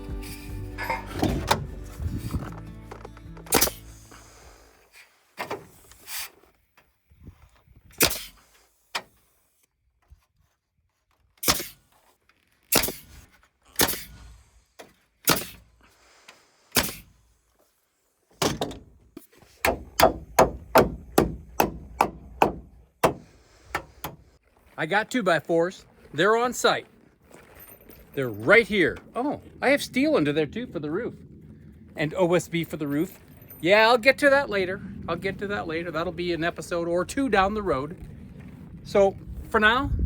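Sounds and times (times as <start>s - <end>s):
hammer knocking on lumber: 19.6s - 24.2s.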